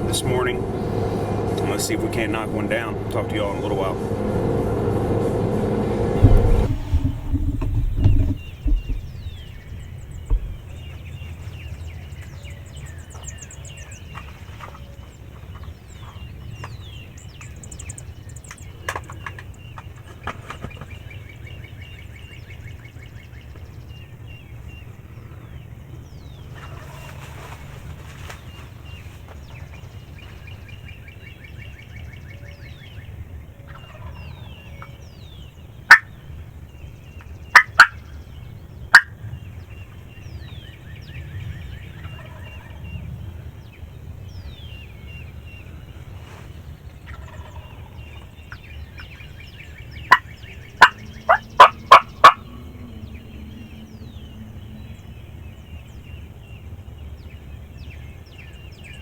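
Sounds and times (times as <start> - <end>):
songbirds calling and trilling: 0.0 - 59.0
turkey gobbling: 33.7 - 34.5, 35.9 - 36.1, 37.5 - 38.1, 38.9 - 39.1, 42.0 - 42.8, 47.1 - 48.2, 50.0 - 52.6.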